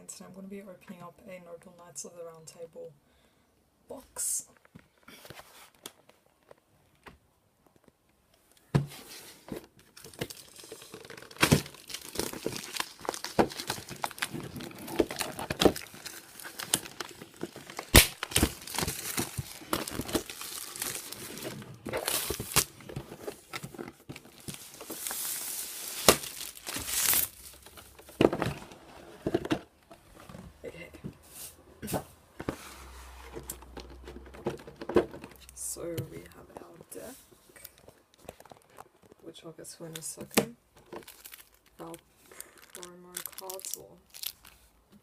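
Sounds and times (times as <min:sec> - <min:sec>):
packaging crinkling and tearing: 0:09.8 - 0:28.1, 0:37.6 - 0:39.2, 0:40.8 - 0:44.7.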